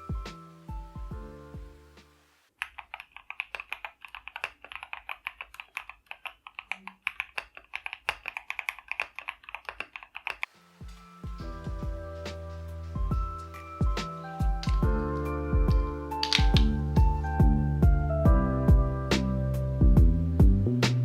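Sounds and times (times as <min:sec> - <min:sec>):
mechanical keyboard typing: 0:02.6 - 0:10.5, 0:14.4 - 0:16.8.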